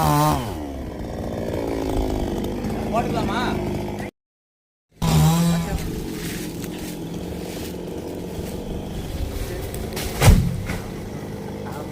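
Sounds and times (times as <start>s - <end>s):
engine running: 0.0s - 4.1s, 5.0s - 11.9s
short loud knock: 10.2s - 10.8s.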